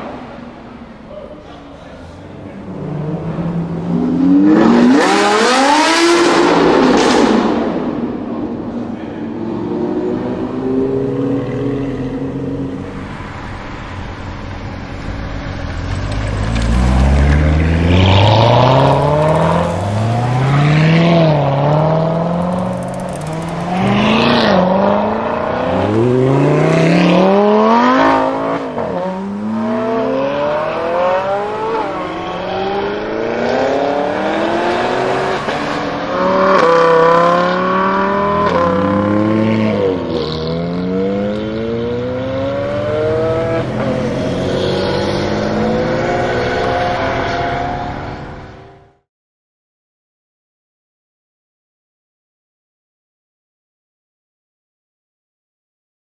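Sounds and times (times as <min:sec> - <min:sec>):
sports car engine accelerating: 0:02.5 - 0:13.3, 0:15.1 - 0:49.0.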